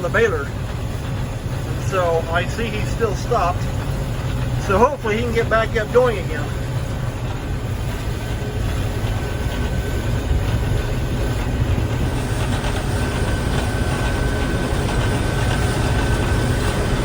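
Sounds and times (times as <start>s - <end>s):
combine harvester engine drone: 0.0s - 17.0s.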